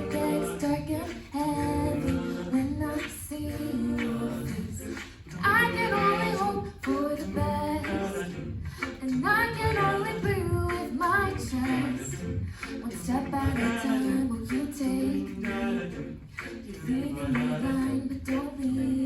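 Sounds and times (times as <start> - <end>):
a cappella group singing in harmony: 0.0 - 19.0.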